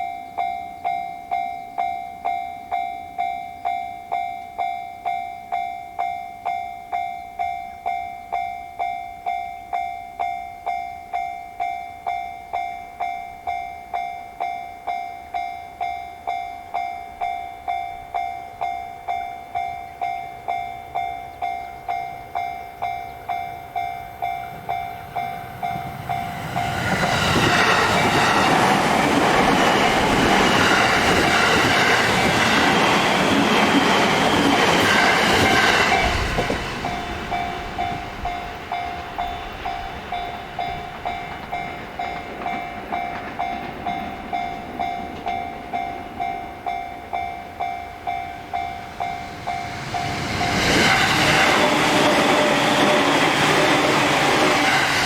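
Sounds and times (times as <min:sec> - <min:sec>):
level-crossing warning bell: 0:00.0 - 0:55.0
train running noise: 0:14.9 - 0:55.0.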